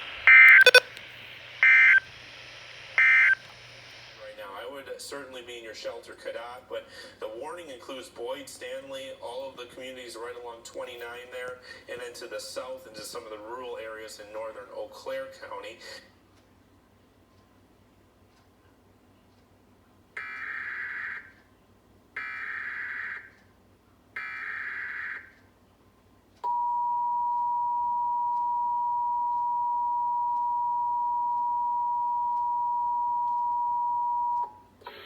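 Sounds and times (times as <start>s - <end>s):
two-tone attention signal: 0.3s - 0.9s
digital data tone bursts: 0.3s - 1.0s, 1.6s - 2.0s, 3.0s - 3.4s.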